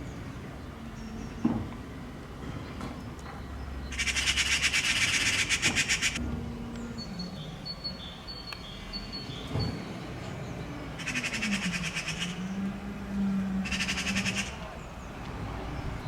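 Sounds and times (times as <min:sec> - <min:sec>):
magpie rattling chatter: 0:03.9 - 0:06.2.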